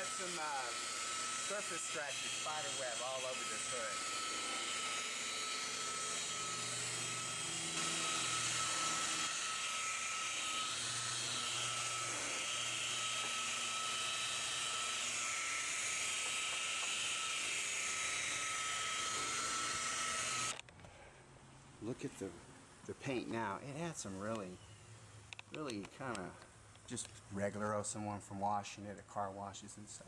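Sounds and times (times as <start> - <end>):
paint buffer motor whine: 0.0 - 20.6.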